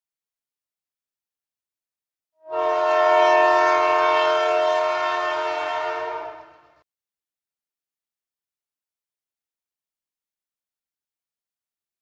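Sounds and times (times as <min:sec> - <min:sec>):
train horn blast: 0:02.4 - 0:06.8.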